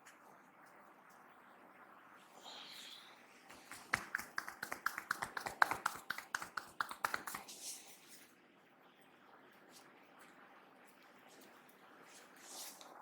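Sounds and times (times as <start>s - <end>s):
hands tapping rapidly: 3.7s - 7.4s.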